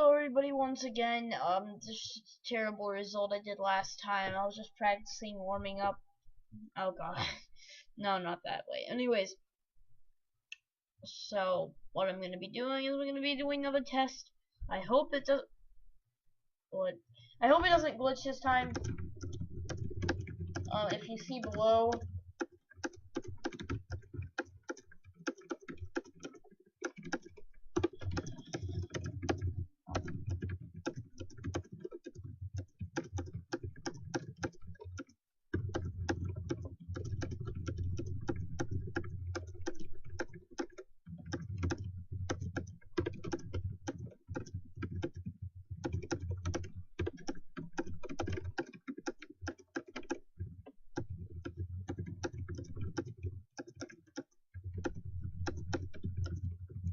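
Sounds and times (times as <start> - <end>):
fast typing on keyboard: 17.4 - 56.9.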